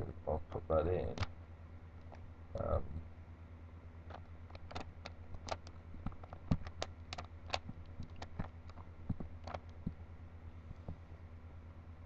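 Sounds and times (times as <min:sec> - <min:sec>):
steady low hum: 0:00.0 - 0:12.0
puzzle cube plastic clicks: 0:04.1 - 0:10.0.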